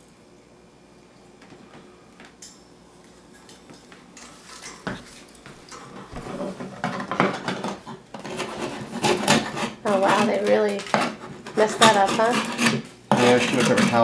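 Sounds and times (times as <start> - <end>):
knife scraping nest box: 8.2 - 14.0.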